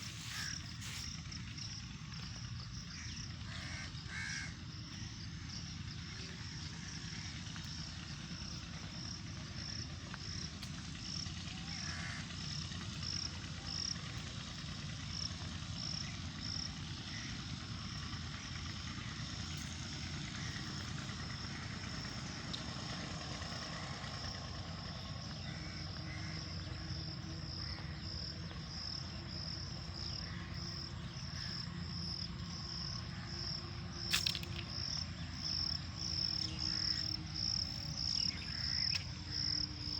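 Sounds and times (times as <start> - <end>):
faint calls: 0.0 - 29.2, 30.0 - 39.9
sharp click: 34.1 - 34.7.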